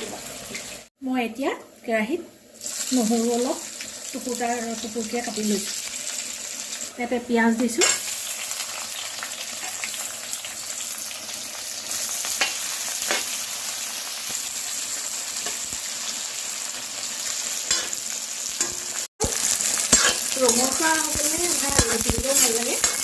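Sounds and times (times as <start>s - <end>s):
onion sizzling in hot oil: 0.0s - 23.0s.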